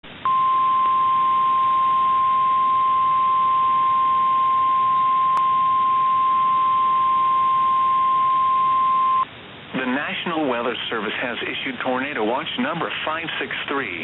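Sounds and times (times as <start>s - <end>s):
high-pitched warning tone: 0.3s - 9.3s
radio hiss: 9.7s - 14.0s.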